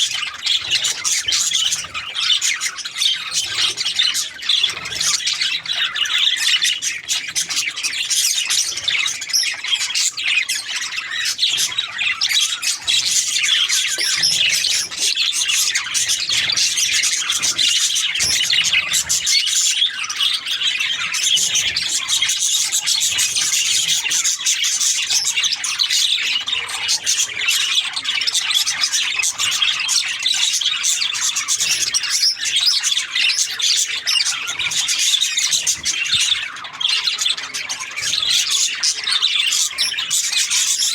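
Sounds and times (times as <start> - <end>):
budgerigars chirping and chattering: 0.0 - 40.9.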